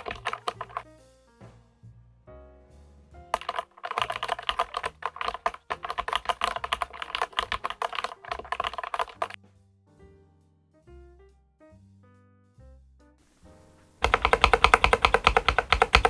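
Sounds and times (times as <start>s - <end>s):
mechanical keyboard typing: 0.0s - 0.8s, 3.4s - 9.4s, 13.5s - 16.0s.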